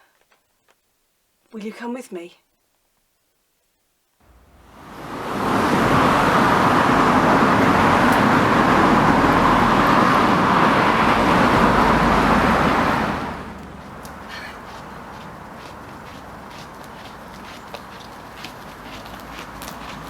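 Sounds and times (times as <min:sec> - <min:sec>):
road traffic passing: 0:04.2 - 0:20.0.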